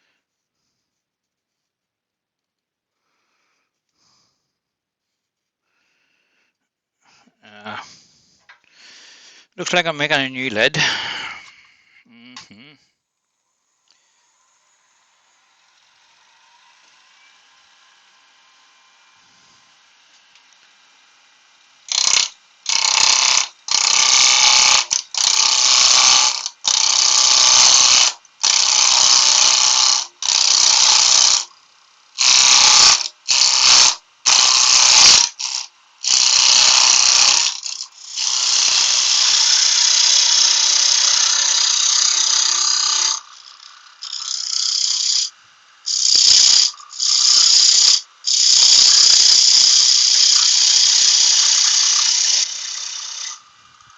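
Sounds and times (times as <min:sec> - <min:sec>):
power tool cutting wood: 0:13.8 - 0:53.9.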